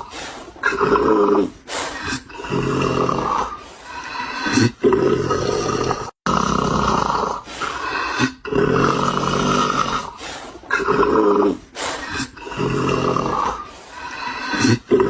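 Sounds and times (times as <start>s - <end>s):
loud rasping snoring: 0.0s - 15.0s.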